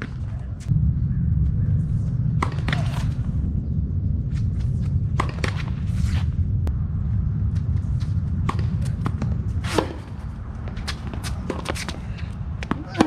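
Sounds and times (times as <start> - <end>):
steady low rumble: 0.0 - 13.0
shoes scuffing on court: 7.6 - 13.0
racket hitting tennis ball: 8.4 - 12.0
tennis ball bouncing: 8.4 - 12.0, 12.6 - 13.0.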